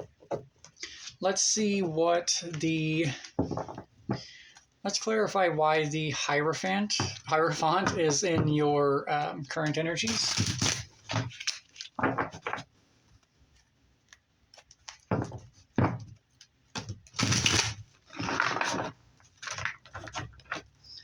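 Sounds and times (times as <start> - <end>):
cards shuffling: 10.1 - 12.6.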